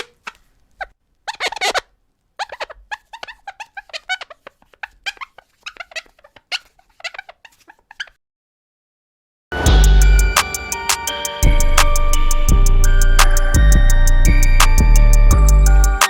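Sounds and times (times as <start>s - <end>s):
glass squeaking while wiped: 0.0s - 8.2s.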